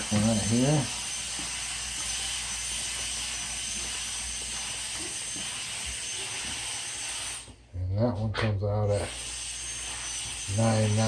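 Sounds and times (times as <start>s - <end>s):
thin high whine: 0.0s - 7.6s.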